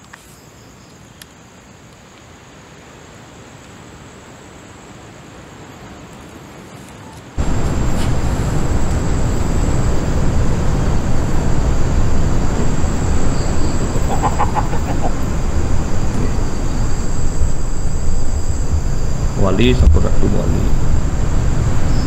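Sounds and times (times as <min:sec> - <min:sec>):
wind buffeting microphone: 0:07.4 - 0:22.0.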